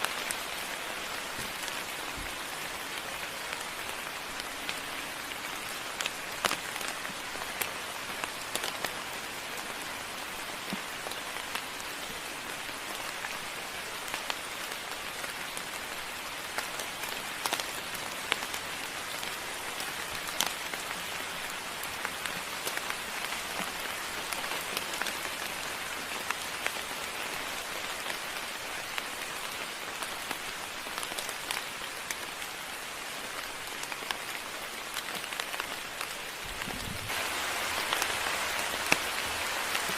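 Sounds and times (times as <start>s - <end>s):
rain falling: 0.0s - 39.9s
sharp raindrop hits: 36.4s - 39.9s.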